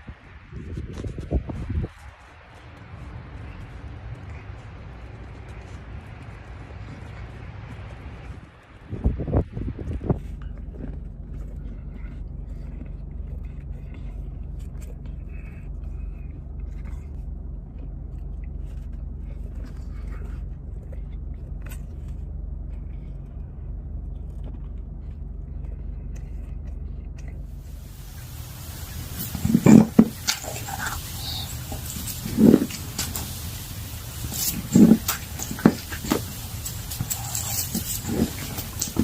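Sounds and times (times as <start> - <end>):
low mechanical hum: 0.0 - 39.0
faint scrapes and clicks: 9.9 - 39.0.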